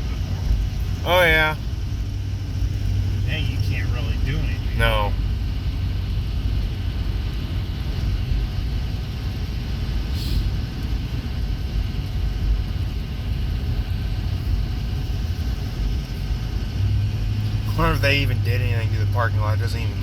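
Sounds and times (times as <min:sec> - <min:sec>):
low road rumble: 0:00.0 - 0:20.0
vehicle engine hum: 0:00.0 - 0:20.0
short hiss: 0:10.1 - 0:10.5.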